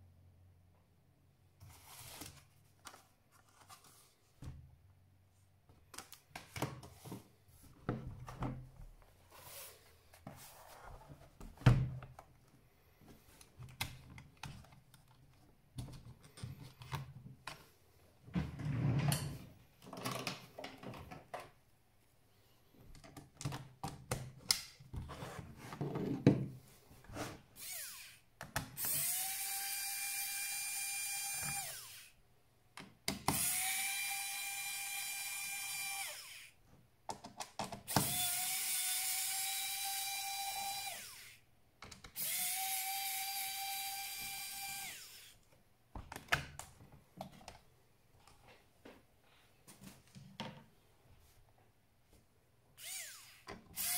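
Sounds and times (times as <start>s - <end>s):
electric screwdriver motor whining: 27.6s - 28.2s, 28.8s - 32.1s, 33.3s - 36.5s, 37.9s - 41.4s, 42.2s - 45.4s, 52.8s - 53.9s.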